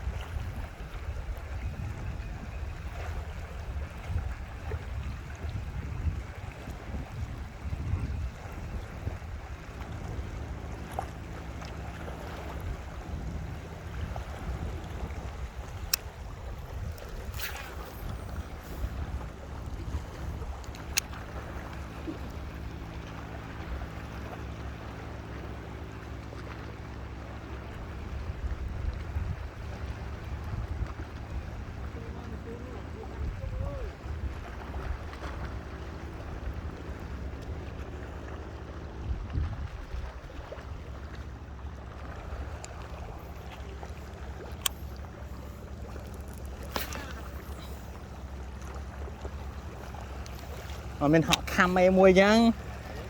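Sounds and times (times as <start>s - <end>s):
wind noise: 0.0s - 9.5s, 39.0s - 40.1s
boat engine humming: 0.0s - 53.0s
water wash: 2.9s - 53.0s.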